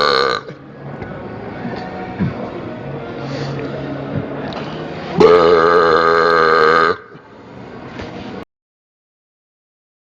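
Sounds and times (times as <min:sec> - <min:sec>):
loud burp: 0:00.0 - 0:00.6, 0:05.2 - 0:07.2.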